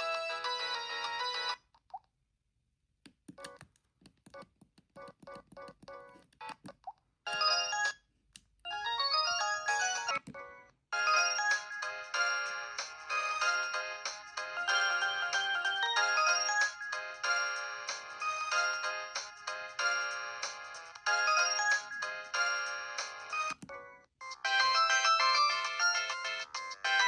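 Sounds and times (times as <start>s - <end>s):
phone ringtone melodies: 0.0s - 1.6s, 7.3s - 8.1s, 8.7s - 27.0s.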